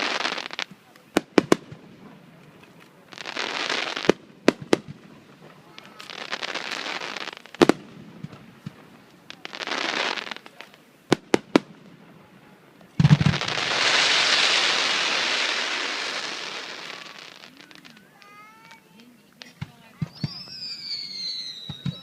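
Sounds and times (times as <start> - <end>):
firework crackling hiss: 0.0 - 12.0, 12.9 - 22.0
firework bangs: 0.0 - 22.0
heavy firework boom: 13.0 - 16.2.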